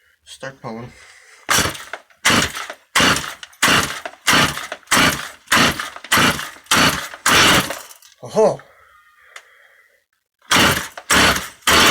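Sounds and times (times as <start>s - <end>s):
chainsaw recoil starter pulls: 1.5s - 8.2s, 10.5s - 11.9s.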